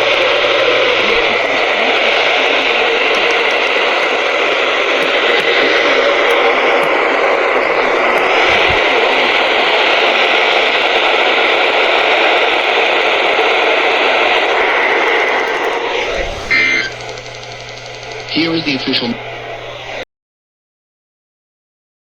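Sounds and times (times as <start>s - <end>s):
radio static hiss: 0.0s - 20.0s.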